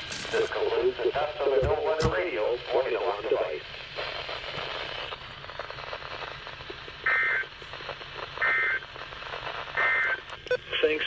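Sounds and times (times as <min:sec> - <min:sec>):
radio receiver hiss: 0:00.0 - 0:11.0
two-tone data bursts: 0:08.4 - 0:08.9, 0:09.7 - 0:11.0.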